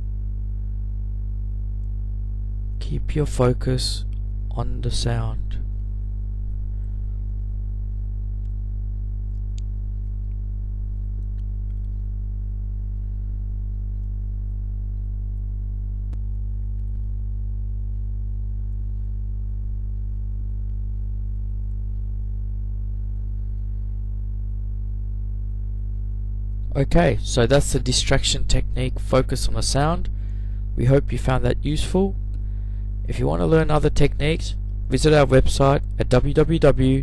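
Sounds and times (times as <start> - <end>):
low machine hum: 0.0 - 37.0.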